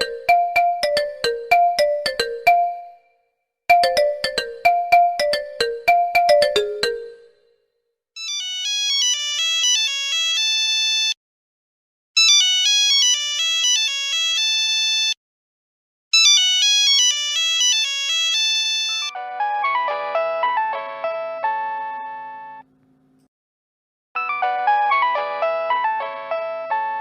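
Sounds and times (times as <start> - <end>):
high-pitched chiming ringtone: 0.0 - 3.1, 3.7 - 7.5
plucked ringtone melody: 0.0 - 3.1, 3.7 - 7.5.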